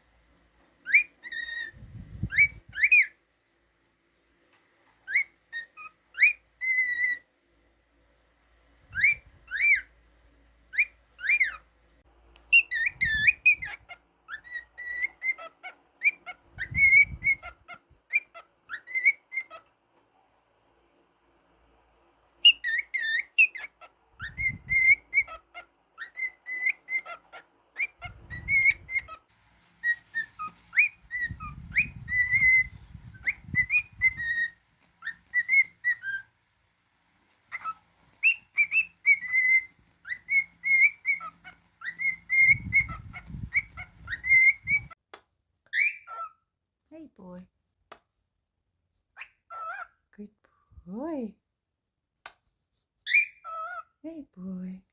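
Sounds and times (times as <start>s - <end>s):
cockatiel whistling: 0.8s - 3.2s, 5.0s - 7.3s, 8.9s - 9.9s, 10.7s - 11.6s, 12.5s - 19.7s, 22.4s - 29.2s, 29.8s - 36.3s, 37.5s - 45.0s, 45.7s - 46.3s, 53.1s - 53.8s.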